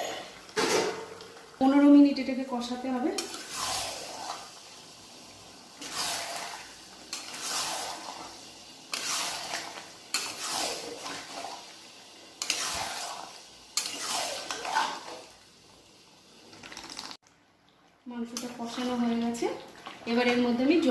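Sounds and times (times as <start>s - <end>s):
spatula scraping a cooking pot: 5.8s - 8.3s, 8.9s - 11.6s, 12.4s - 15.2s.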